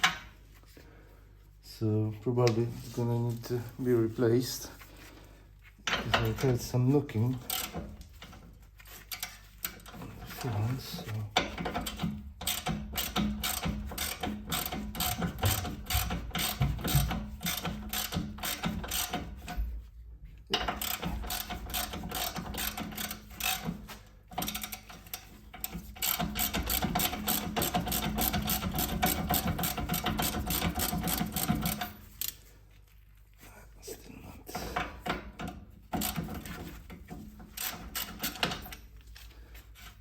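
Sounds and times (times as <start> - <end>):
ratchet wrench clicking: 7.5 - 8.3, 11.5 - 19.5, 20.6 - 23.8, 24.4 - 32.4, 37.6 - 38.8.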